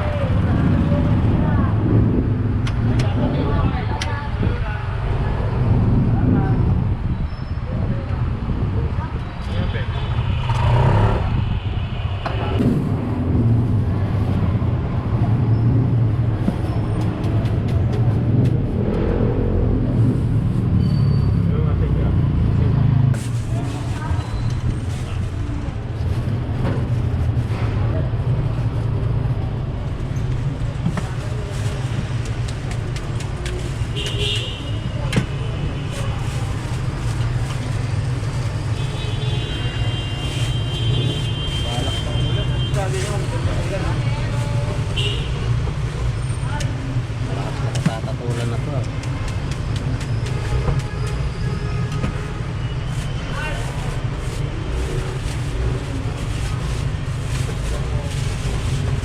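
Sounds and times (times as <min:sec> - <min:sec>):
low rumble of passing vehicles: 0:00.0 - 0:59.0.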